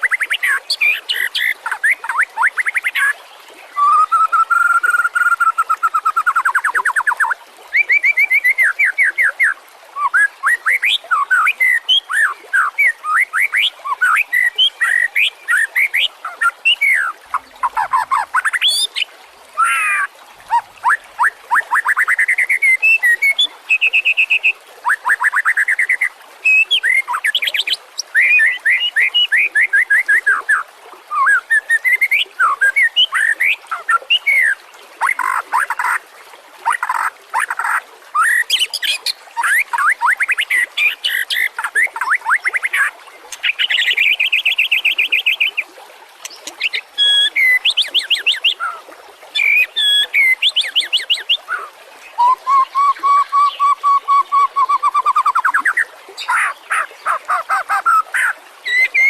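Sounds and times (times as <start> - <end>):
songbird singing trills and whistles: 0.0 - 19.0, 46.2 - 59.0.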